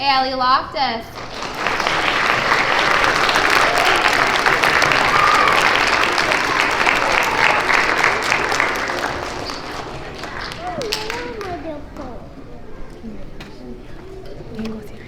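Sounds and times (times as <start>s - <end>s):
children's voices: 0.0s - 15.0s
children applauding: 1.2s - 12.4s.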